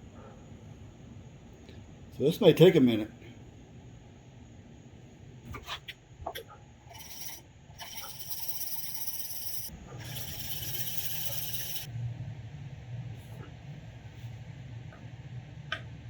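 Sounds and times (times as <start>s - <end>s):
chisel scraping on sharpening stone: 6.9s - 11.9s.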